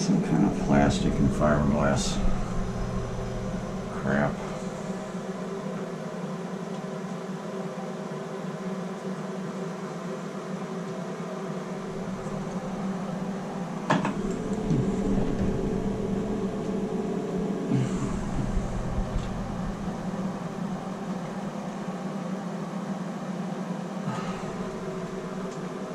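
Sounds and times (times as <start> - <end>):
torch flame roaring: 0.0 - 6.2, 11.8 - 22.1, 24.1 - 25.9.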